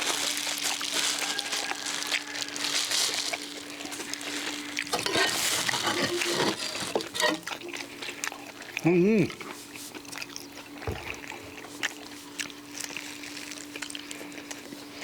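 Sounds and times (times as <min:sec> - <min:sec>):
clicks and rustles from food handling: 0:00.0 - 0:08.5
people chewing food: 0:00.0 - 0:15.0.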